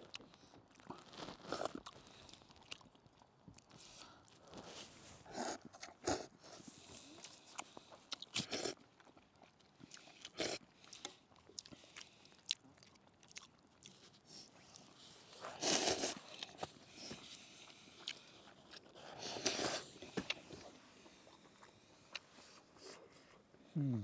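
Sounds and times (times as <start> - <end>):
person chewing noodles: 0.0 - 23.1.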